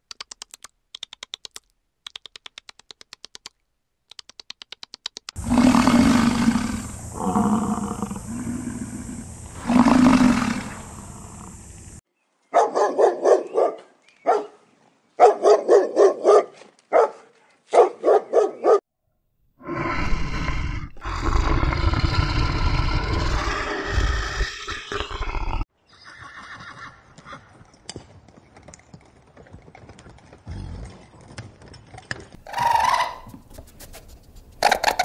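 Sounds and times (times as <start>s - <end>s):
deep animal roar: 5.4s - 12.0s, 19.6s - 25.6s
harsh noisy animal call: 5.4s - 12.0s, 19.6s - 25.6s, 32.4s - 33.3s
short rapid animal calls: 32.4s - 33.4s, 34.6s - 35.0s.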